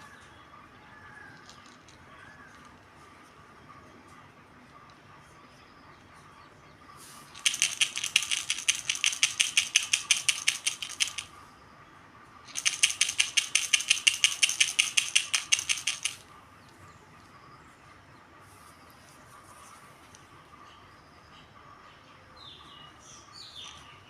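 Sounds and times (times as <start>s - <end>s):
baby rattle shaken: 1.4s - 2.0s, 7.3s - 11.3s, 12.5s - 16.2s.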